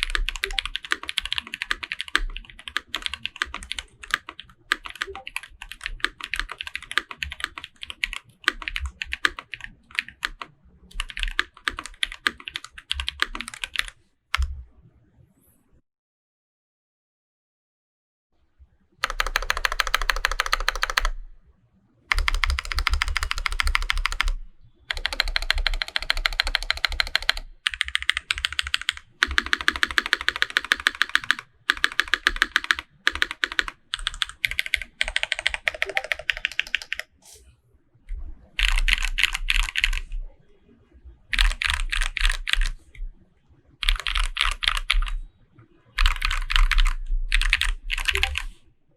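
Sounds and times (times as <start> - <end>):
mechanical keyboard typing: 0.0 - 14.5, 19.0 - 21.2, 22.1 - 37.1, 38.6 - 40.2, 41.3 - 42.8, 43.8 - 45.2, 46.0 - 48.5.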